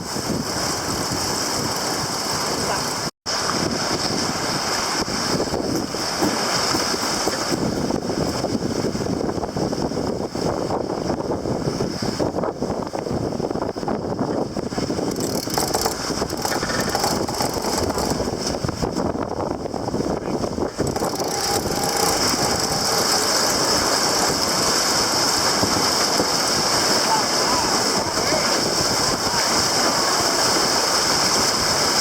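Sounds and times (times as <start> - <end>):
rushing water: 0.0 - 32.0
wind: 0.0 - 32.0
rapid clicking and rattling: 0.5 - 3.1, 14.8 - 18.6, 20.7 - 26.6.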